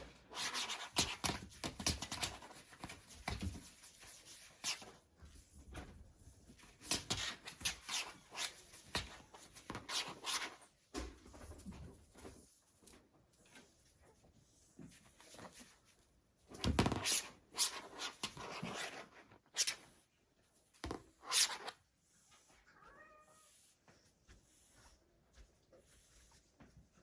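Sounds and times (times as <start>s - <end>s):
kitten taps and scratches: 0.6s - 3.8s.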